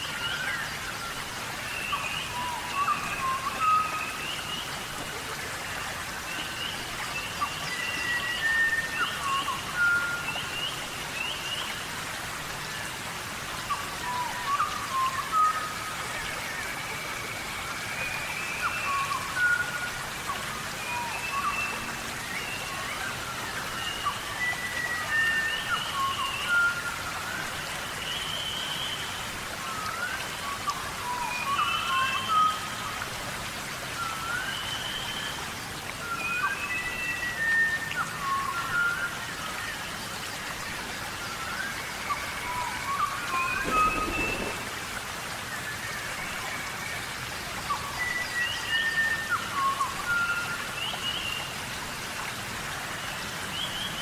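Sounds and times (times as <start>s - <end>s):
steady rain: 0.0s - 54.0s
whistled bird calls: 6.6s - 11.7s, 13.7s - 33.0s, 34.0s - 39.9s, 41.2s - 51.5s.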